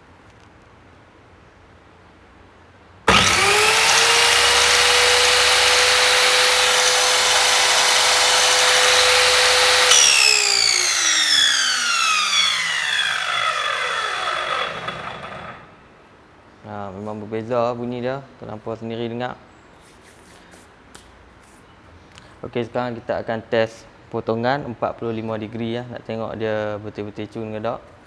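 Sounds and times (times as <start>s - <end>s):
power saw motor whining: 3.1s - 15.8s.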